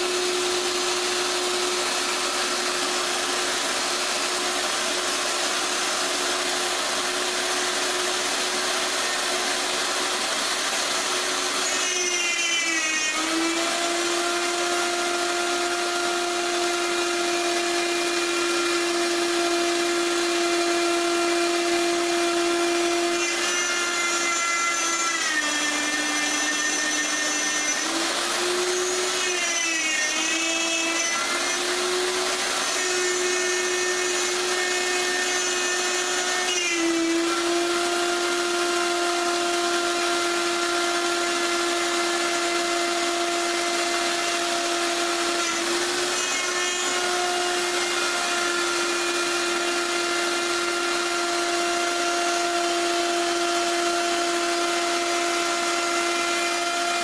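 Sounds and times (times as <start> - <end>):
power tool motor whining: 0.0 - 57.0.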